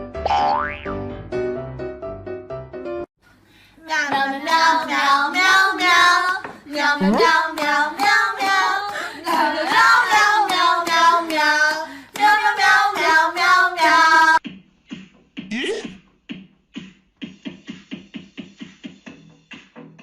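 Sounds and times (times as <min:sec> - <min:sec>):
high-pitched voice singing: 0:06.9 - 0:07.4.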